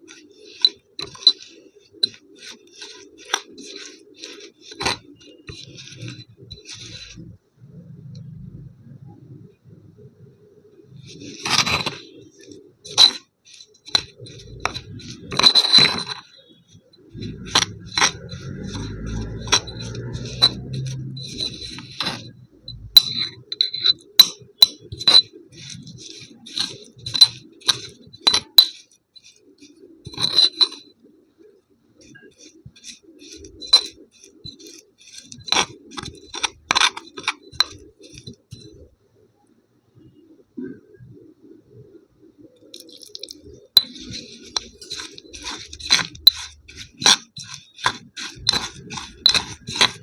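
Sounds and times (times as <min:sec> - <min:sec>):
hard objects clinking: 0:00.0 - 0:07.2, 0:11.0 - 0:31.0, 0:32.0 - 0:38.8, 0:42.6 - 0:50.0
low steady hum: 0:04.7 - 0:28.8.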